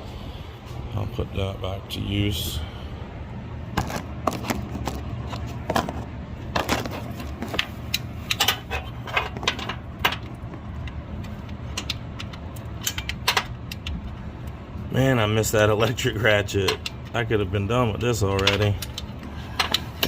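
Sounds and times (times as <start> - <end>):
metal tools clinking: 6.6 - 11.0, 18.2 - 20.0.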